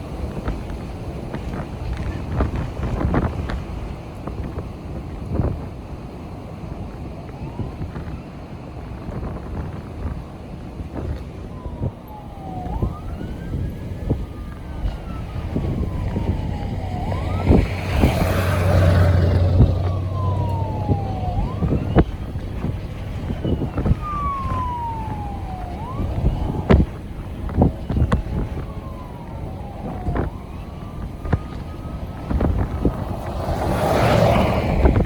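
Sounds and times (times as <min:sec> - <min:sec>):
emergency vehicle siren wailing: 0:00.0 - 0:35.0
wind noise: 0:00.0 - 0:35.0
heavy vehicle passing rumble: 0:11.6 - 0:35.0.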